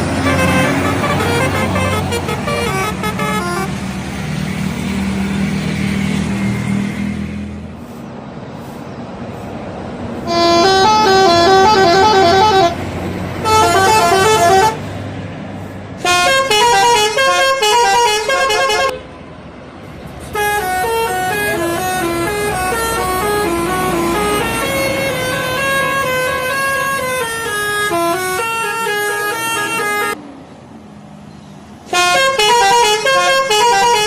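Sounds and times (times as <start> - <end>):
musical bus air horn: 0.0 - 3.8, 10.2 - 14.9, 16.0 - 19.1, 20.2 - 30.2, 31.9 - 34.0
bus engine running: 0.0 - 34.0.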